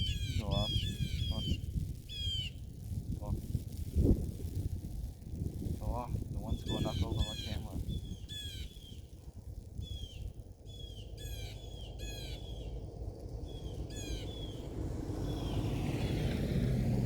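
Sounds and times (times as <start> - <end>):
birds squawking: 0.0 - 1.6, 6.6 - 7.7
low background rumble: 0.0 - 17.0.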